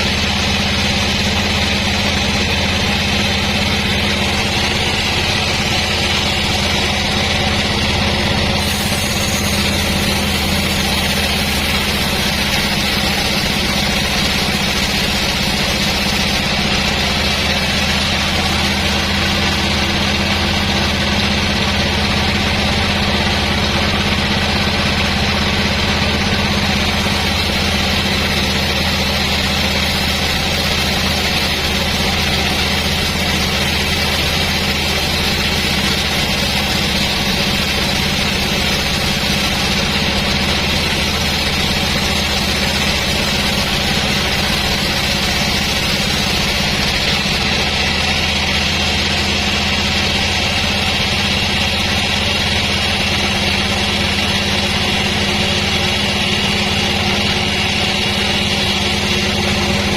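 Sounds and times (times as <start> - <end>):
motor hum: 0.0 - 59.9.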